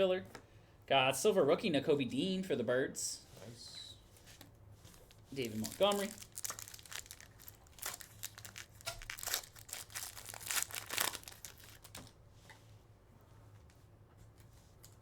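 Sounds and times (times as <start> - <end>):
plastic wrapper crinkling and tearing: 4.9 - 12.1.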